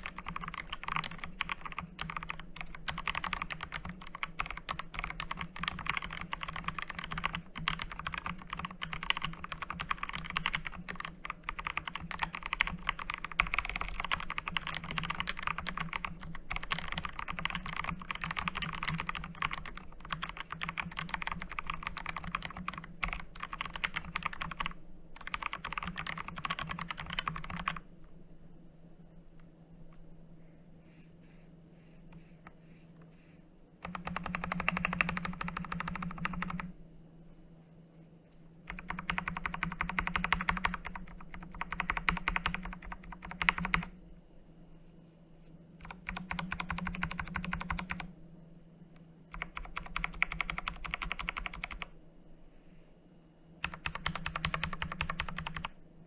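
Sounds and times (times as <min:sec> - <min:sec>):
mechanical keyboard typing: 0:00.0 - 0:27.8, 0:33.8 - 0:36.7, 0:38.7 - 0:43.9, 0:45.8 - 0:48.1, 0:49.3 - 0:51.9, 0:53.6 - 0:55.8.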